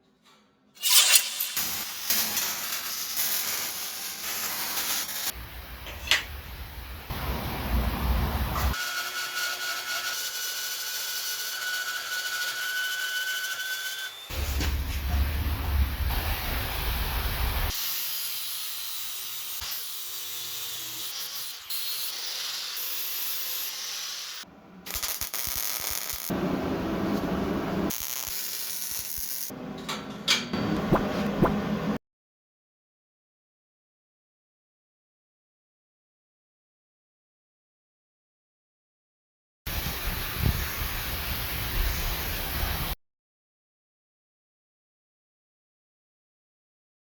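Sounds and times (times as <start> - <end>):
power tools on steel: 0.8 - 7.4, 8.5 - 26.4.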